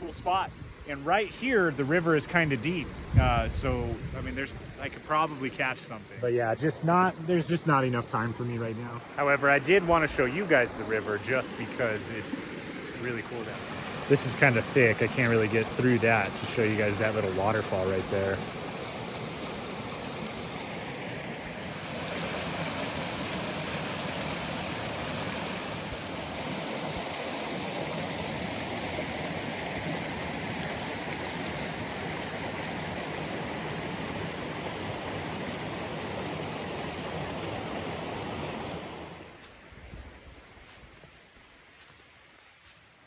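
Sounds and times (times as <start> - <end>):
river water rushing: 9.0 - 39.5.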